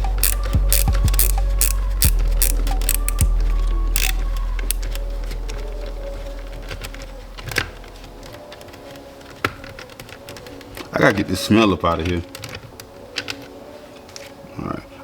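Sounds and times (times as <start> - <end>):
hand tool clicks: 0.0 - 5.0.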